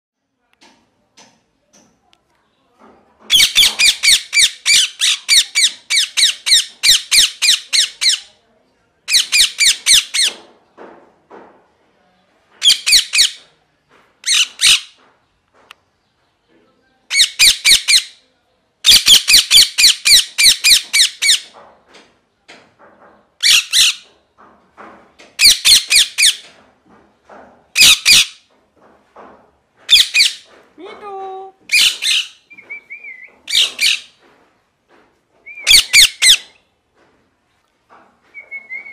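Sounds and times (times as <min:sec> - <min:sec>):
parakeet screeching: 0:12.6 - 0:13.4, 0:14.2 - 0:14.9, 0:23.4 - 0:24.0, 0:27.8 - 0:28.4, 0:29.9 - 0:30.5, 0:31.7 - 0:32.4, 0:33.5 - 0:34.1, 0:35.7 - 0:36.6.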